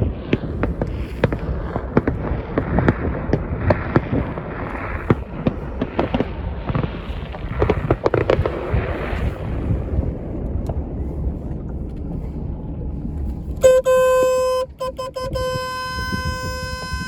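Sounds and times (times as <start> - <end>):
fireworks bangs and cracks: 0.0 - 10.9
fireworks crackling: 0.0 - 11.0, 13.6 - 17.0.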